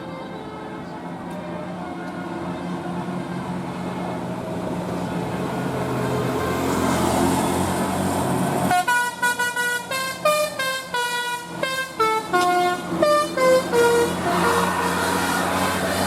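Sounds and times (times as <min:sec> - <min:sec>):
vehicle engine: 0:00.1 - 0:16.0
musical air horns playing tune: 0:08.7 - 0:16.0.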